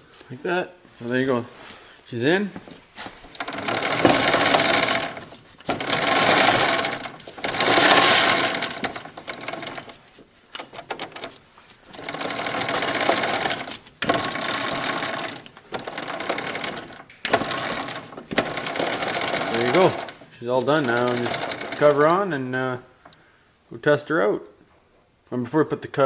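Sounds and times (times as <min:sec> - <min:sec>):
power tool bursts: 0:03.4 - 0:09.9, 0:12.0 - 0:22.1.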